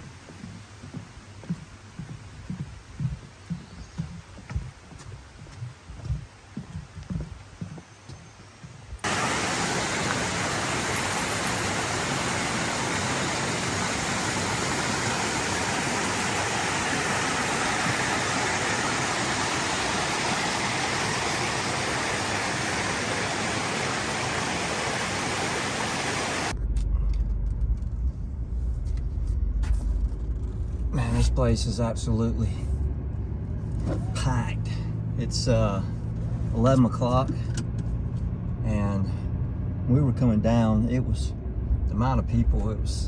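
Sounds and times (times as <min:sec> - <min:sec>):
rushing water: 0:09.0 - 0:26.6
low rumble: 0:26.5 - 0:35.2.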